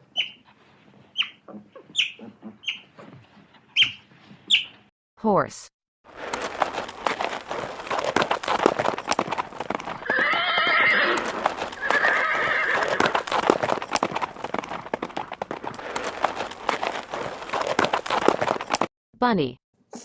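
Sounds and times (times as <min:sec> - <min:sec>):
horse hooves clip-clopping: 0:00.0 - 0:04.8, 0:06.1 - 0:18.9
horse whinnying: 0:10.0 - 0:13.8.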